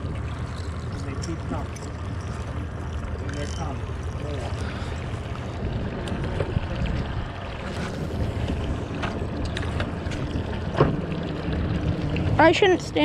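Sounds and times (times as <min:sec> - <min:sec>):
wind and water rumble: 0:00.0 - 0:13.0
wind buffeting microphone: 0:05.3 - 0:13.0.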